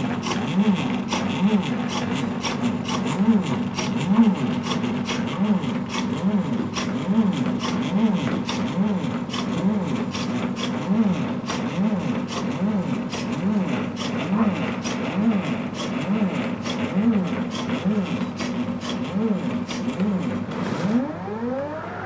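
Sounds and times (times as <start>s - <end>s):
motors whining: 17.8s - 22.0s.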